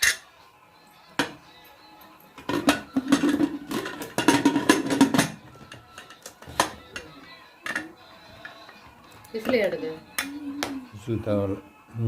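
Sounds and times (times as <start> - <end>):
metal cookware clinking: 0.0 - 0.3, 2.2 - 8.0.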